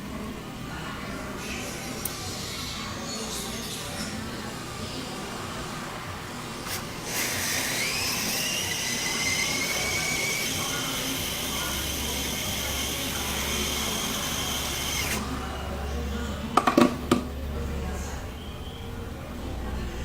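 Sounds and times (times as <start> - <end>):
electric blower motor whining: 7.0 - 15.3.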